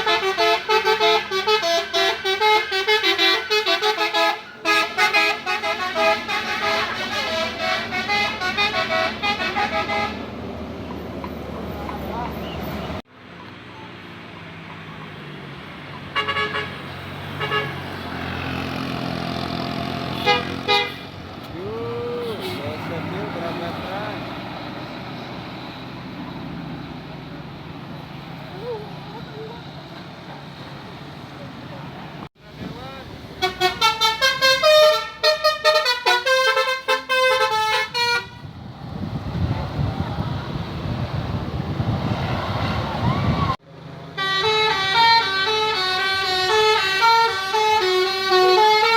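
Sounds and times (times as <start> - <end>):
bus musical horn tooting: 0.0 - 10.4, 16.0 - 24.3, 33.4 - 38.5, 44.1 - 48.9
bus engine running: 0.0 - 48.9.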